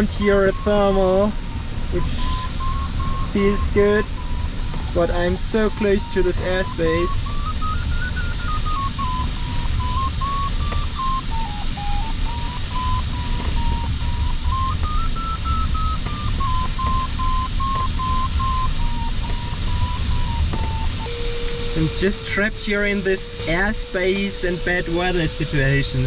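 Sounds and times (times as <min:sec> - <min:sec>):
airflow rushing in cockpit: 0:00.0 - 0:26.0
variometer tone changing pitch: 0:00.0 - 0:26.0.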